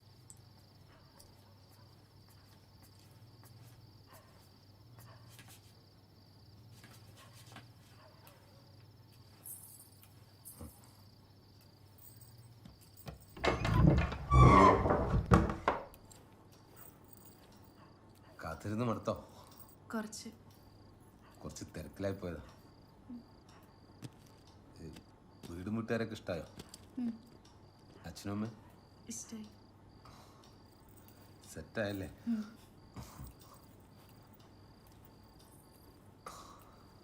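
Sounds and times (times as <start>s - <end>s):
insects chirping: 0.0s - 37.0s
loud clatter of knocks: 13.4s - 15.9s.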